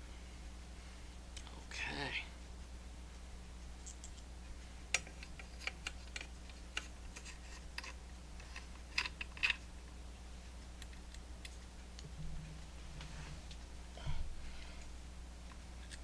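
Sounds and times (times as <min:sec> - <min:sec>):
low steady hum: 0:00.0 - 0:16.0
small metal parts clicking: 0:04.9 - 0:09.6.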